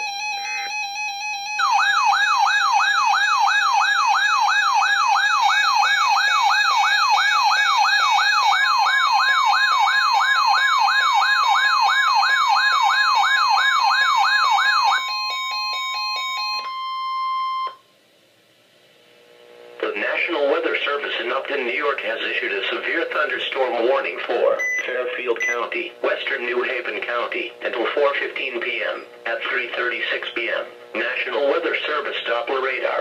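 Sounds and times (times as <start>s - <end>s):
rising and falling siren wail: 0.0s - 16.6s
steady high alert tone: 0.0s - 17.8s
stepped beeping tones: 24.6s - 25.7s.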